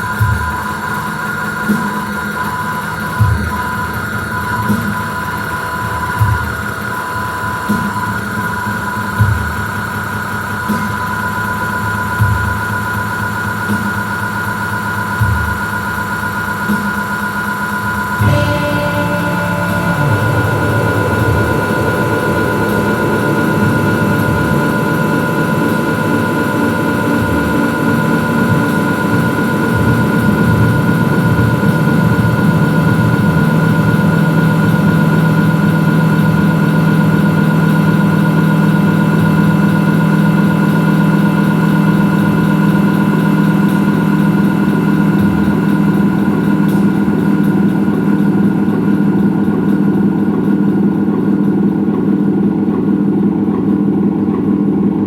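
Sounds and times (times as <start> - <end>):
electronic noise music drone: 18.0 - 55.0.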